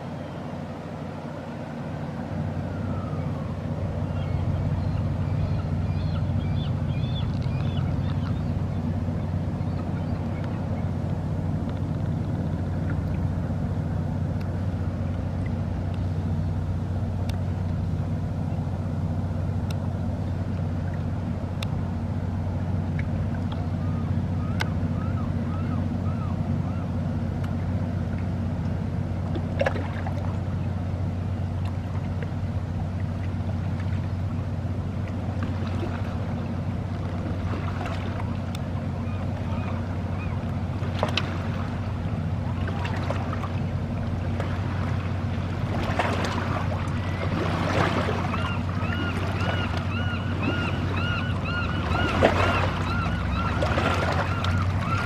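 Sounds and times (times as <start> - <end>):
boat engine droning: 0.0 - 55.0
short high bird calls: 48.2 - 53.6.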